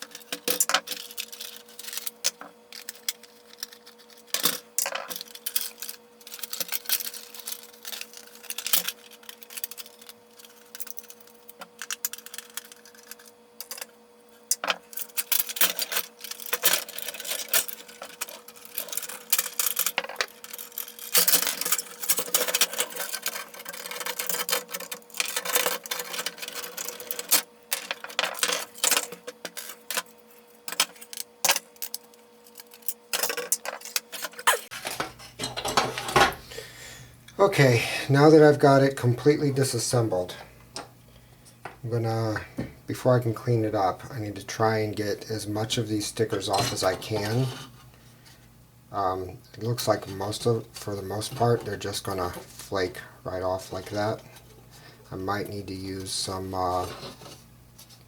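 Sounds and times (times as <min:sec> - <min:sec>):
plastic parts clicking and clattering: 0:00.0 - 0:13.9, 0:14.5 - 0:36.4
faint hum: 0:00.0 - 0:58.0.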